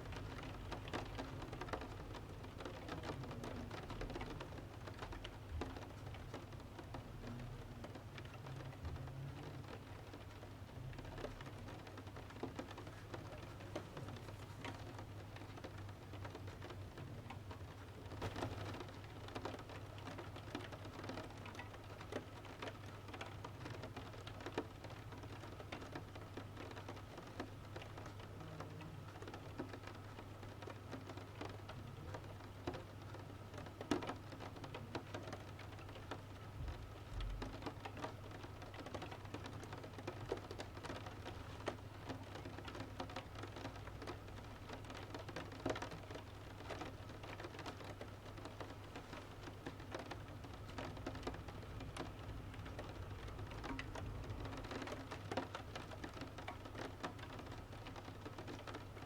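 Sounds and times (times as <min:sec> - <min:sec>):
rain pattering on window: 0:00.0 - 0:59.0
wood stove crackling: 0:18.2 - 0:19.0.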